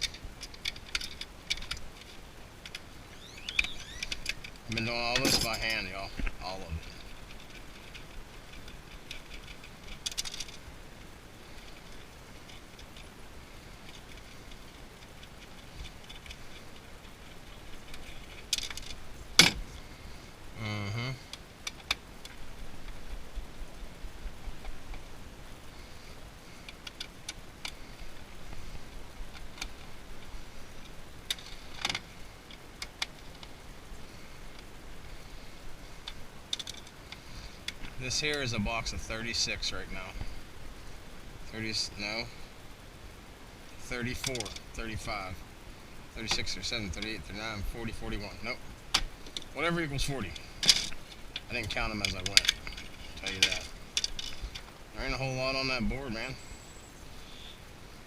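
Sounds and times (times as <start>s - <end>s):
light clicks of parts handled: 0.0s - 2.9s, 36.0s - 40.5s, 48.8s - 56.4s
small parts clicking and rattling: 0.0s - 23.6s, 24.3s - 56.4s.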